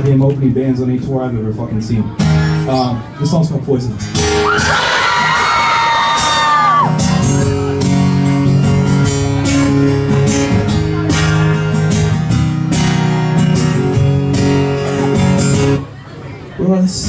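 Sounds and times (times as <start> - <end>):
acoustic guitar strumming: 2.1 - 16.0.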